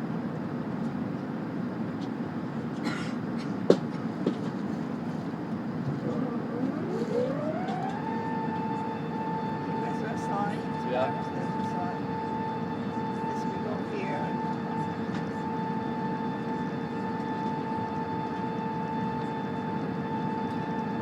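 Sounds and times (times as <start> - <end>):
airliner cabin noise: 0.0 - 21.0
mechanical whine rising in pitch: 6.0 - 11.8.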